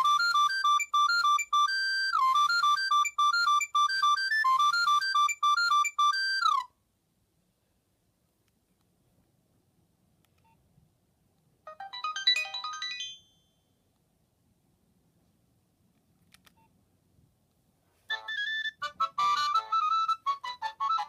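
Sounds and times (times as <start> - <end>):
electronic ringtone melody: 0.0 - 6.7, 11.7 - 13.4, 18.1 - 21.0.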